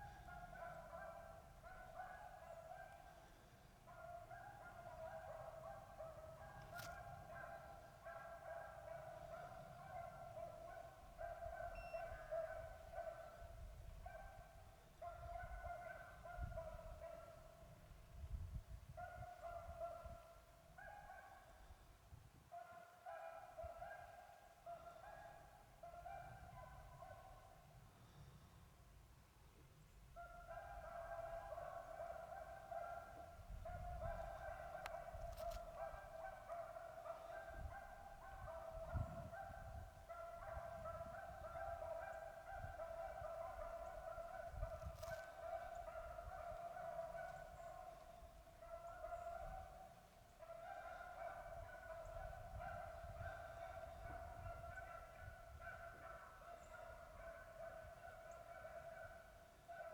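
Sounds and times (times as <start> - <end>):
beagles baying: 0.0 - 17.6, 30.2 - 59.9.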